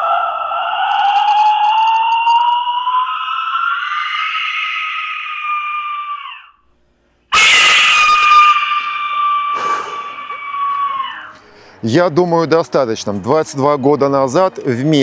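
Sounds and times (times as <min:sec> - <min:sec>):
shrill whistle blasts: 0:07.3 - 0:11.3.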